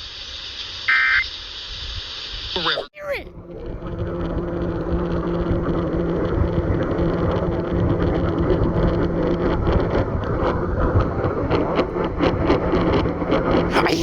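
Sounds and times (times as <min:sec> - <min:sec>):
radio static hiss: 0:00.0 - 0:07.7
static crackling: 0:00.0 - 0:14.0
low hum: 0:02.5 - 0:14.0.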